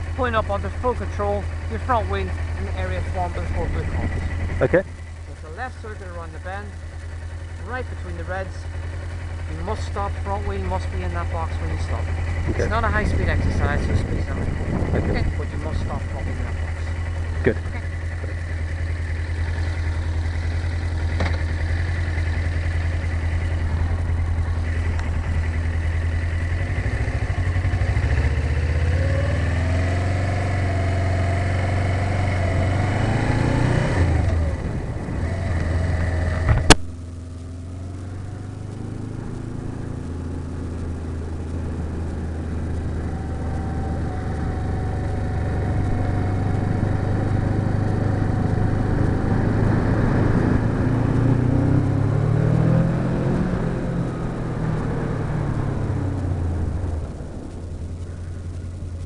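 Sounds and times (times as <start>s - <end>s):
motorcycle engine: 0.0s - 59.0s
sharp click: 36.4s - 37.0s.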